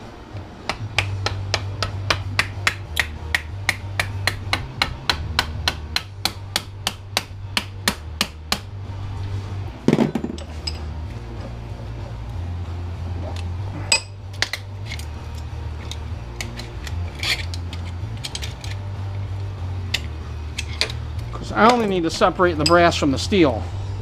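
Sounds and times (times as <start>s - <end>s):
hammer striking metal: 0.7s - 8.7s, 13.9s - 14.6s
light metallic clinks: 10.4s - 11.1s.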